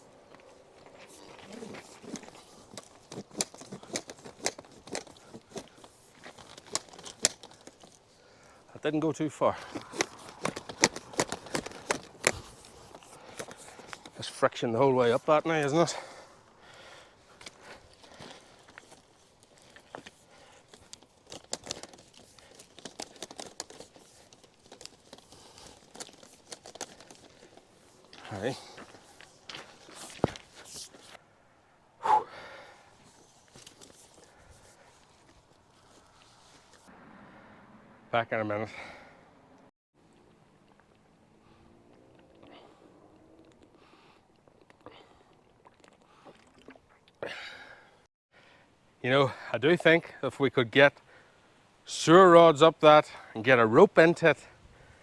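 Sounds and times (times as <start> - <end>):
plastic pipe scraping in duct: 9.6 - 14.3.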